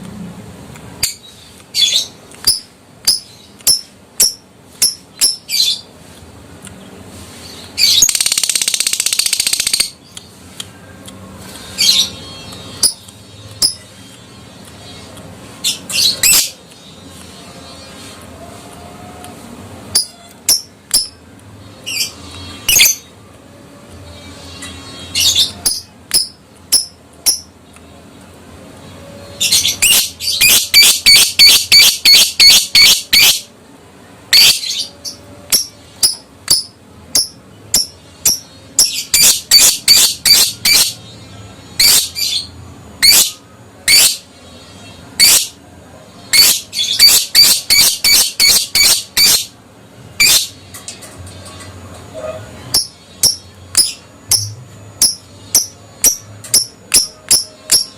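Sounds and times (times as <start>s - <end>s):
lovebird shrill chirping: 29.5s - 33.4s, 46.3s - 49.5s, 52.7s - 57.9s.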